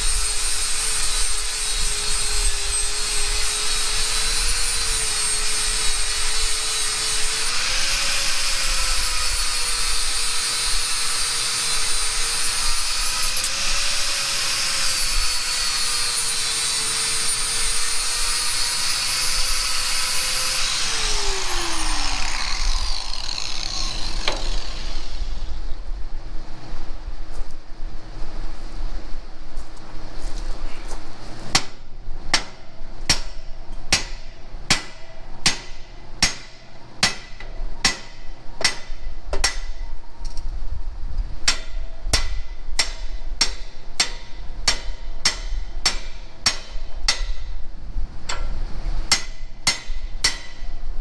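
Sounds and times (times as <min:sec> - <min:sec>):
power grinder on metal: 0:00.0 - 0:25.6.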